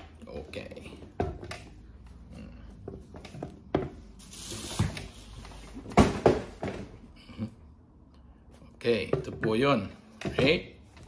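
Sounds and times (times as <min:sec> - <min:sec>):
sneakers knocking and bumping: 0:02.8 - 0:04.2, 0:05.7 - 0:07.0.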